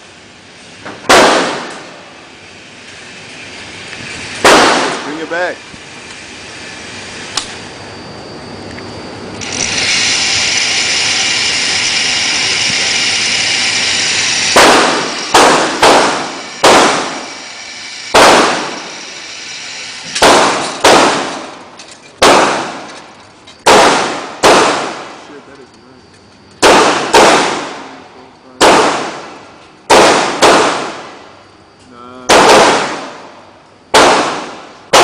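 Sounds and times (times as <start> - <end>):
steady hiss: 0.0 - 7.6, 9.4 - 26.1
gunshots: 1.0 - 2.0, 4.4 - 5.3, 14.5 - 17.3, 18.1 - 18.9, 20.1 - 21.6, 22.2 - 22.9, 23.6 - 25.2, 26.6 - 28.0, 28.6 - 31.2, 32.2 - 35.0.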